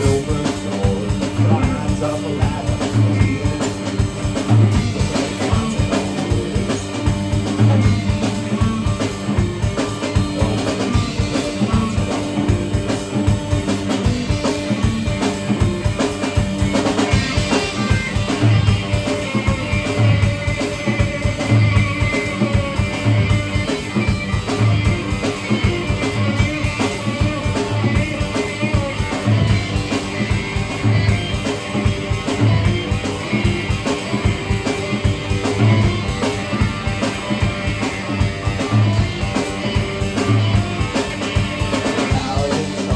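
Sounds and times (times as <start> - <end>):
drum kit beat: 0.0 - 42.9
guitar: 0.0 - 42.9.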